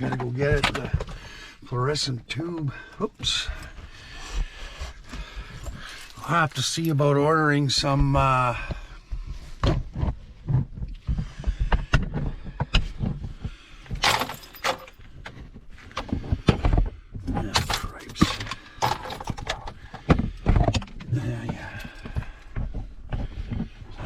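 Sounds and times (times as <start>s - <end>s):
objects clicking and knocking: 9.6s - 24.0s.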